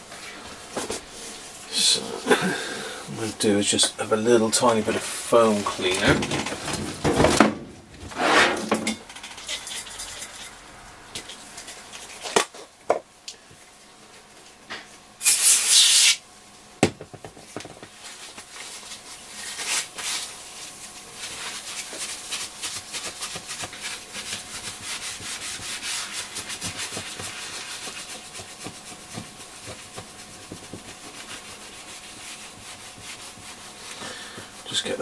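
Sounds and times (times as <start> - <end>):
cloth rubbing on case: 19.9 - 35.0.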